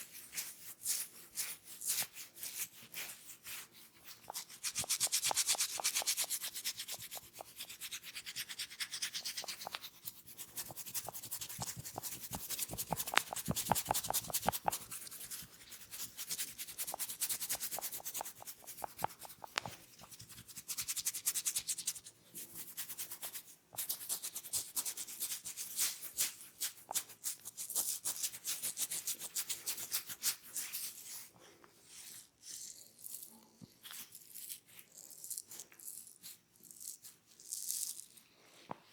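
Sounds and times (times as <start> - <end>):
fingers scratching through hair: 0.3 - 22.0.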